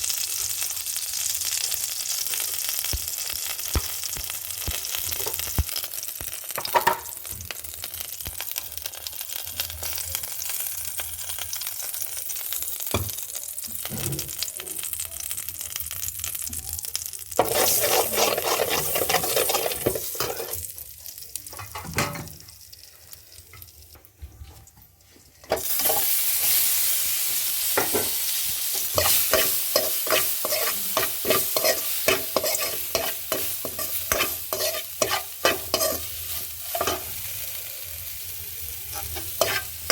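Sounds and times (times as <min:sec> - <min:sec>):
food sizzling in a pan: 0:00.0 - 0:39.9
spoon scraping a pan: 0:17.4 - 0:20.7, 0:25.4 - 0:26.6, 0:27.8 - 0:37.2, 0:38.9 - 0:39.9.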